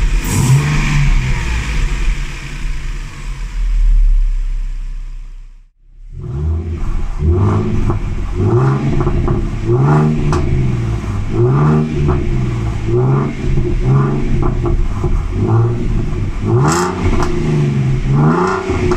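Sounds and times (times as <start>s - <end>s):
car engine revving: 0.0s - 18.9s.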